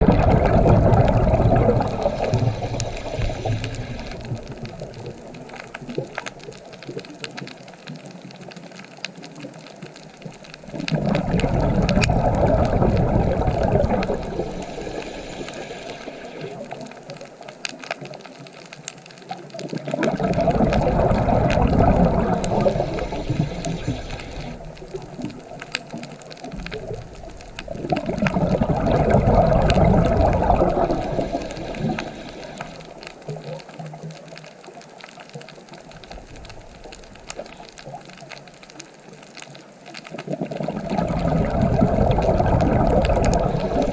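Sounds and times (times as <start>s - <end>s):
ocean waves breaking: 20.1s - 25.3s.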